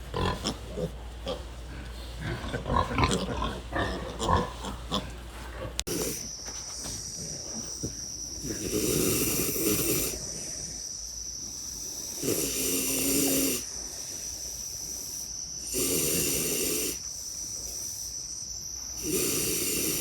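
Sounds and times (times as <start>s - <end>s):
pig snoring raspily: 0.0s - 6.3s, 8.4s - 10.8s, 12.0s - 13.7s, 15.6s - 17.0s, 19.0s - 20.0s
pigs grunting and snorting: 0.0s - 10.9s, 11.8s - 13.7s.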